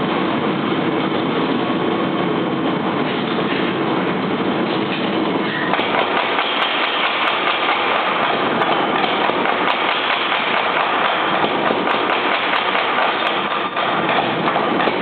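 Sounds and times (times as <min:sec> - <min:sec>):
power hammer rapid blows: 0:05.7 - 0:15.0.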